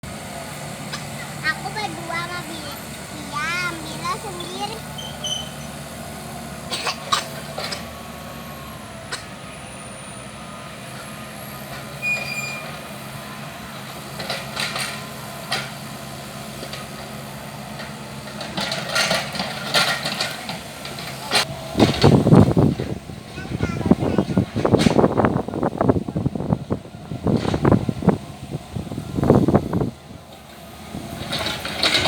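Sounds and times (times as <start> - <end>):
excavator engine running: 0.0 - 32.0
knocks and clanks: 17.8 - 25.2.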